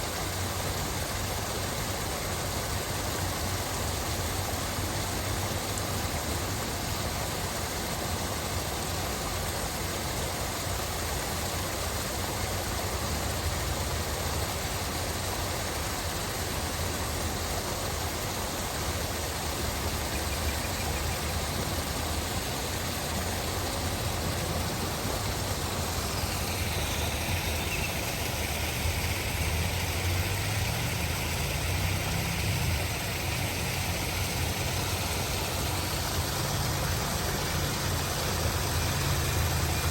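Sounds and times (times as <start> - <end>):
waterfall rushing: 15.4 - 39.9.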